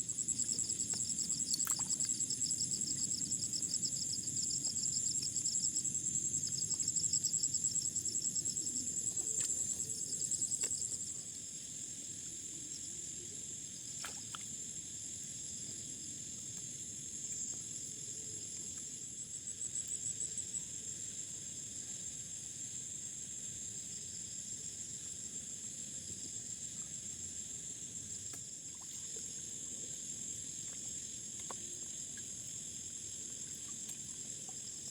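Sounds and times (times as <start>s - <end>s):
insects trilling: 0.0s - 11.8s.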